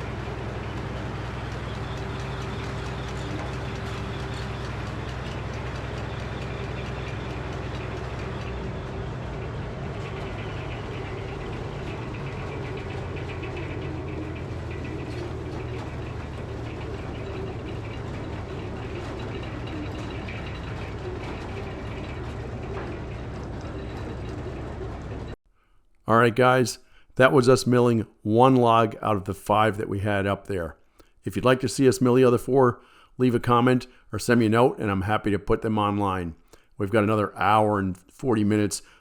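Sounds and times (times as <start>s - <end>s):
sawmill engine running: 0.0s - 25.4s.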